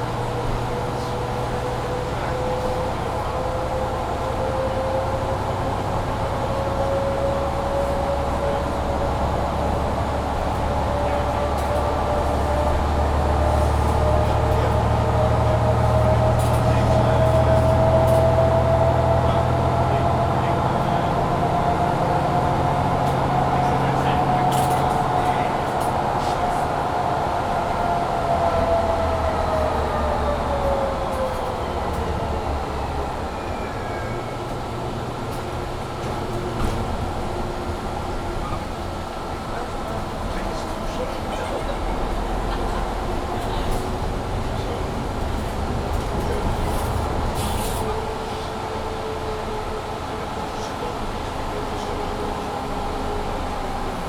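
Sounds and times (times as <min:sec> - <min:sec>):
bus engine pulling under load: 0:00.0 - 0:54.0.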